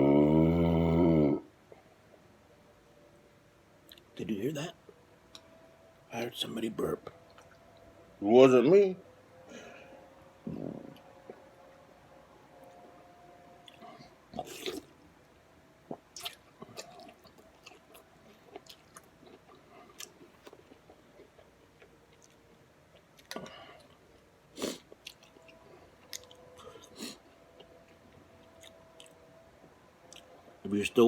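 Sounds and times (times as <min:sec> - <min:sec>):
person chewing food: 0:13.6 - 0:15.0, 0:15.8 - 0:29.3, 0:30.1 - 0:30.6.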